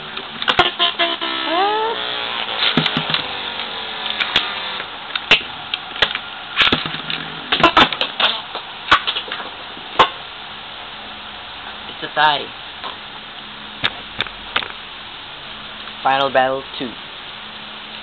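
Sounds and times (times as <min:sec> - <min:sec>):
spinning tops whirring: 0:00.0 - 0:05.5.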